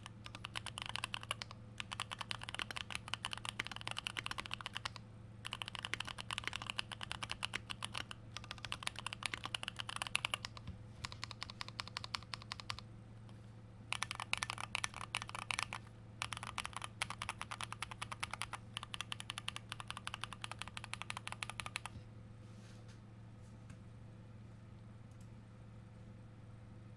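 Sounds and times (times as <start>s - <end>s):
mechanical keyboard typing: 0.0s - 12.8s, 13.9s - 21.9s.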